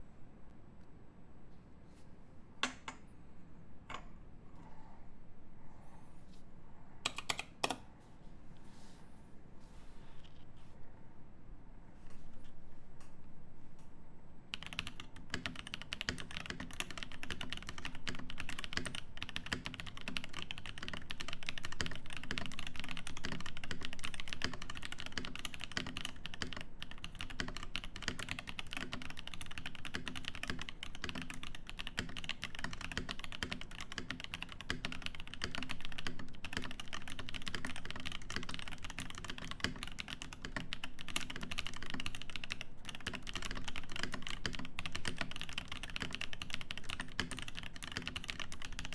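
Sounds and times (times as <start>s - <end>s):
fast typing on mechanical keyboard: 7.1s - 7.8s, 14.5s - 48.9s.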